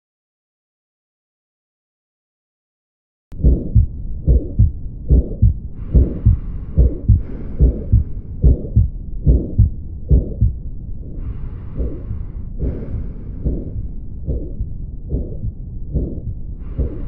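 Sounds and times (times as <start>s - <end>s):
heartbeat through stethoscope: 3.3s - 10.6s, 11.2s - 17.0s
soft breath sound: 3.4s - 17.0s.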